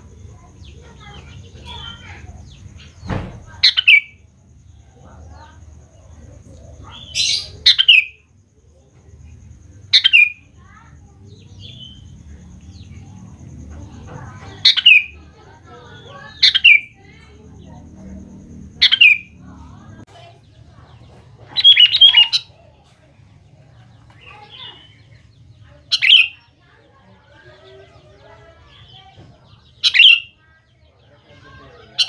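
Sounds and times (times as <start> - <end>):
bulbul calling: 0.6 - 4.8, 5.4 - 8.3, 9.7 - 20.0, 21.5 - 22.6, 24.2 - 26.5, 28.6 - 30.4.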